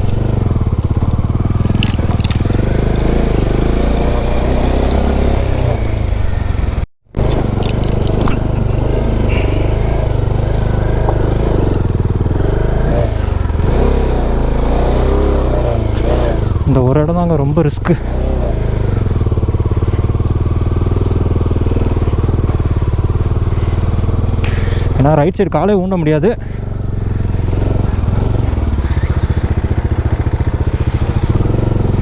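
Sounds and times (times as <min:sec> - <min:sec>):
clicks and scrapes from ground: 0:00.0 - 0:05.9, 0:07.2 - 0:10.1, 0:28.2 - 0:32.0
motorcycle engine at low speed: 0:00.0 - 0:32.0.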